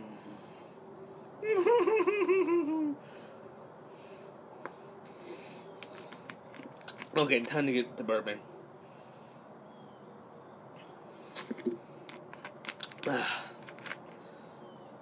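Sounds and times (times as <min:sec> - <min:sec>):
person laughing: 0:01.4 - 0:03.0.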